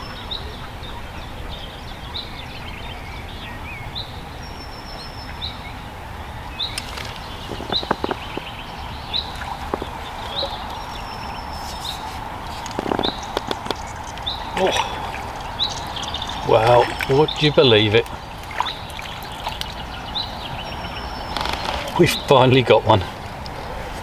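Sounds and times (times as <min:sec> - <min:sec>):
bird chirping: 0:01.5 - 0:24.0
thin bird whistle: 0:06.4 - 0:22.3
sharp clicks and knocks: 0:12.5 - 0:17.4.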